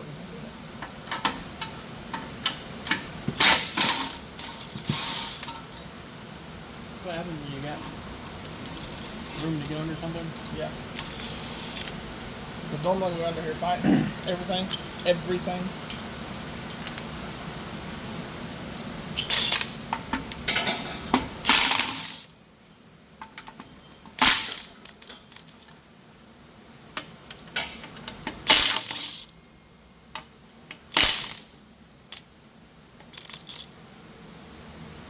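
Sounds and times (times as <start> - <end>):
metal tools clinking: 14.5 - 17.1, 19.2 - 19.8, 20.5 - 22.2, 23.4 - 25.6.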